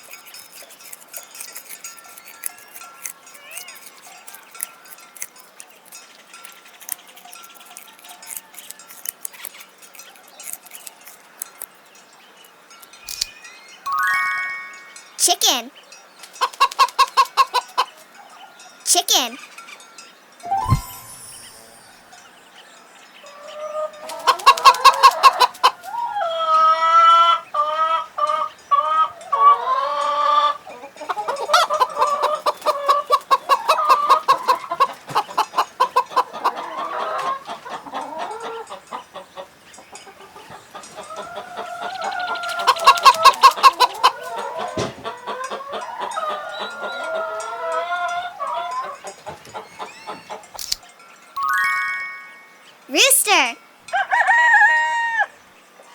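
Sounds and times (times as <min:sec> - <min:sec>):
chickens clucking and cackling: 0:16.2 - 0:18.7, 0:23.2 - 0:50.6, 0:53.9 - 0:55.9.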